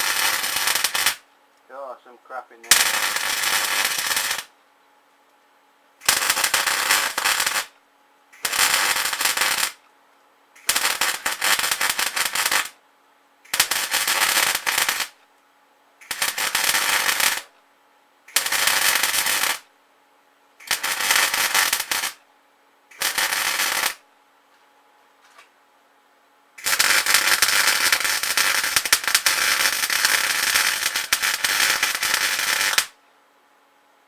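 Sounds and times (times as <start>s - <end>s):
welder arc crackling: 0.0s - 1.3s, 2.5s - 4.5s, 6.0s - 9.9s, 10.6s - 12.8s, 13.5s - 15.2s, 16.0s - 17.5s, 18.3s - 19.7s, 20.6s - 22.2s, 22.9s - 24.0s, 26.6s - 33.0s
faint machine hum: 0.0s - 34.0s.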